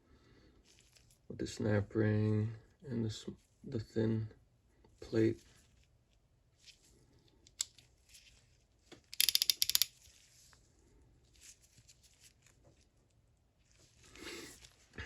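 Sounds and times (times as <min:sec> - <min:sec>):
tools handled: 0:09.0 - 0:10.1
ratchet wrench clicking: 0:09.2 - 0:09.9.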